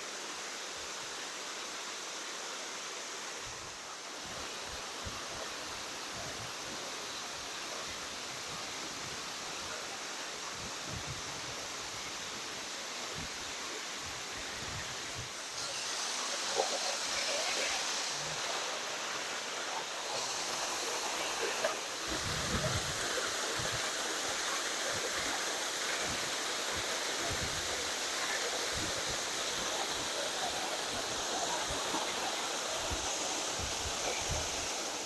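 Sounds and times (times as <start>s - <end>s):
waterfall roaring: 13.1s - 35.0s.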